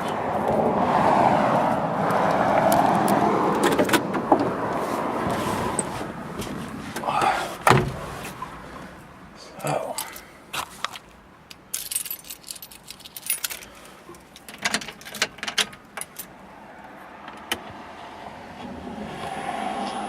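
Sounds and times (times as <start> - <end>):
keys jangling: 11.5 - 16.3.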